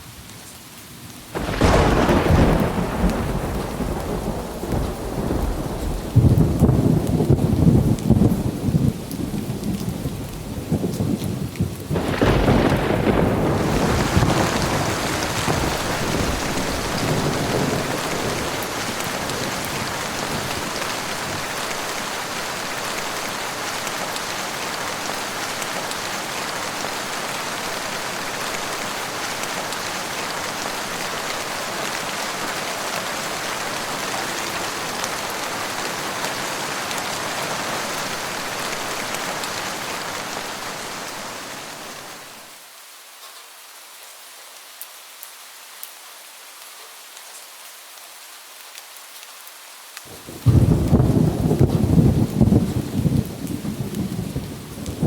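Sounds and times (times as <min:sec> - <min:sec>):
steady rain: 0:00.0 - 0:55.0
rolling thunder: 0:01.4 - 0:09.0, 0:10.1 - 0:22.3, 0:50.1 - 0:55.0
sharp thunderclap: 0:01.4 - 0:09.0, 0:11.9 - 0:21.5, 0:50.3 - 0:55.0.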